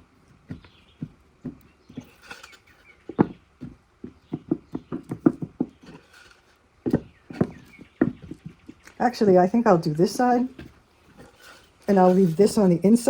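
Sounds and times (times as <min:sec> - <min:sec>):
hollow wooden knocks and clunks: 0:00.0 - 0:02.5, 0:03.1 - 0:09.0.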